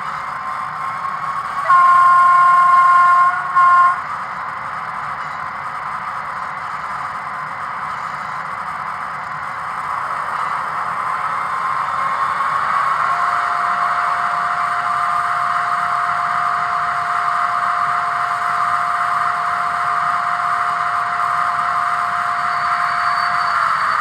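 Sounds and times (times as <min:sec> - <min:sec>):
model locomotive diesel engine sound: 0:00.0 - 0:24.0
locomotive horn blasts: 0:01.6 - 0:04.2, 0:13.1 - 0:23.6.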